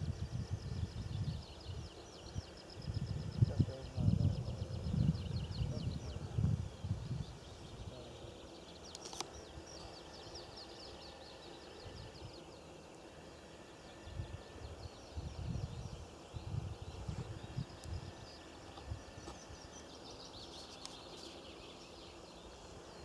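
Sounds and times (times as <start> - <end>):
wind rumble on microphone: 0.0 - 8.3, 14.0 - 19.7
sharp click: 8.9 - 9.4.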